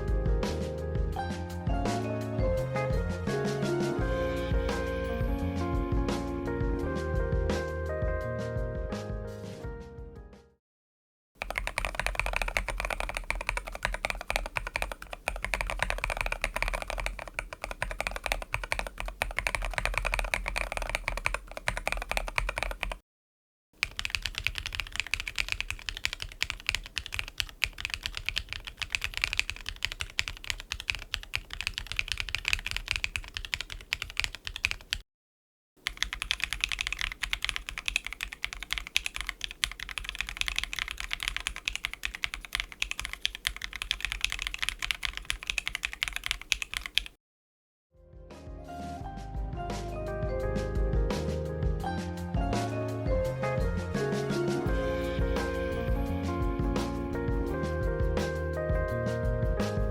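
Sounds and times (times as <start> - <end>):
mechanical keyboard typing: 11.4 - 23.0, 23.8 - 35.0, 35.8 - 47.2.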